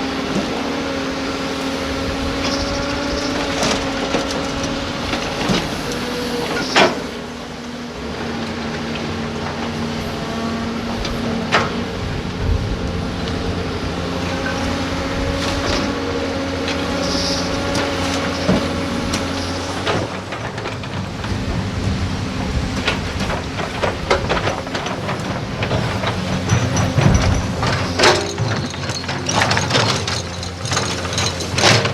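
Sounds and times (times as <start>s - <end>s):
excavator diesel engine running: 0.0s - 31.9s.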